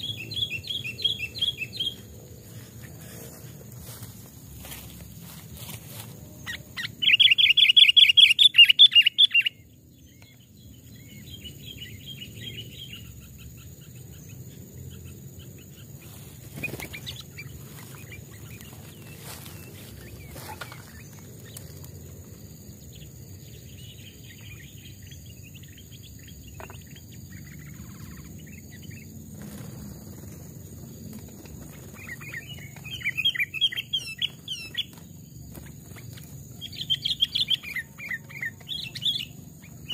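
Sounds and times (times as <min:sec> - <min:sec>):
bird chattering calls: 0:06.4 - 0:09.6, 0:14.9 - 0:21.8, 0:31.4 - 0:35.0, 0:35.6 - 0:39.9.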